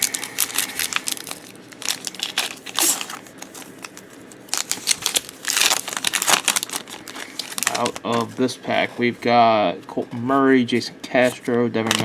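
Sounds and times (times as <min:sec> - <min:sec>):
plastic wrapper crinkling: 0:00.0 - 0:08.4.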